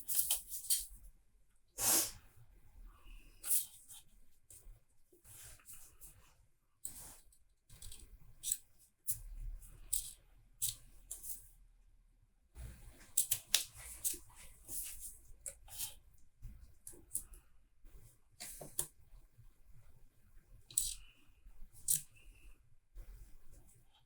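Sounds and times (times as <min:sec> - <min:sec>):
tools clicking and scraping on workbench: 0:20.7 - 0:21.1.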